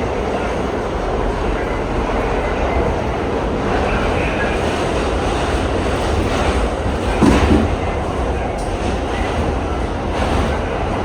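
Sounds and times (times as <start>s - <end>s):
subway train rumbling on track: 0.0s - 11.0s
train jolt: 3.0s - 11.0s.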